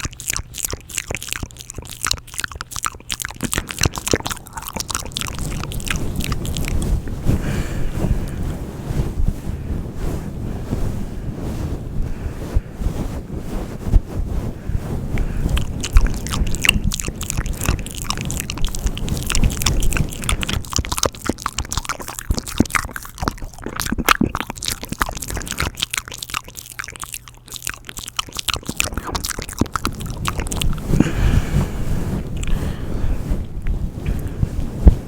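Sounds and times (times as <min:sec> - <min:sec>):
wet lip and tongue clicks: 0:00.0 - 0:07.6, 0:15.2 - 0:31.4
low microphone rumble: 0:02.9 - 0:25.8, 0:28.6 - 0:35.0.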